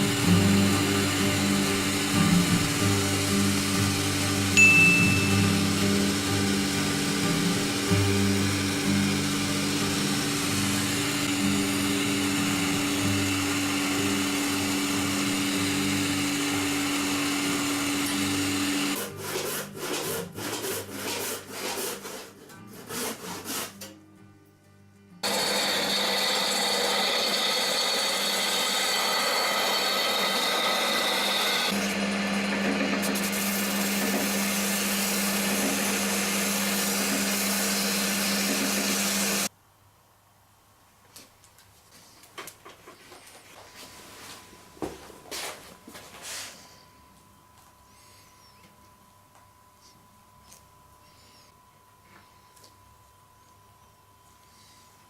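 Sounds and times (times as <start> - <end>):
power tool running: 0.0 - 19.0, 25.2 - 39.5.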